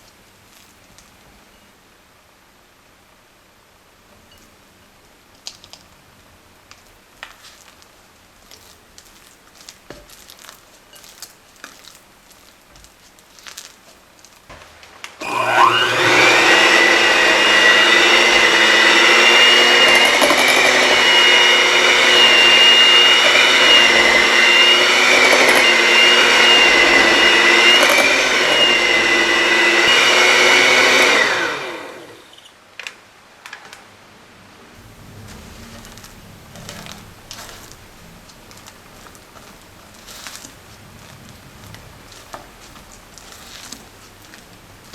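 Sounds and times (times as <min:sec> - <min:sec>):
small electric motor running: 0:15.2 - 0:32.4.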